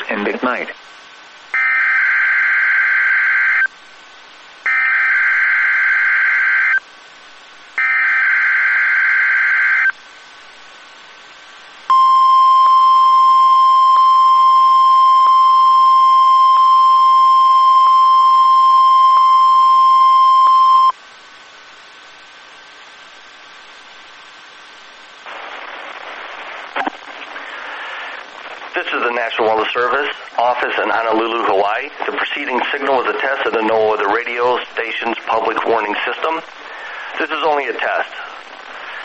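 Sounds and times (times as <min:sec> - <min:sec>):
steady warning alarm tone: 0:04.7 - 0:06.8, 0:07.8 - 0:09.9, 0:11.9 - 0:21.0.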